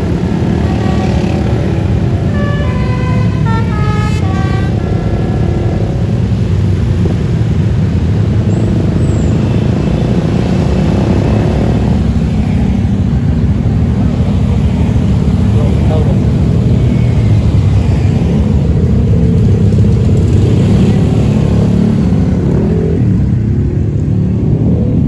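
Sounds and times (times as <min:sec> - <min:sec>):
bus engine rumble: 0:00.0 - 0:25.0
road traffic: 0:00.0 - 0:25.0
bus musical horn: 0:00.5 - 0:06.1.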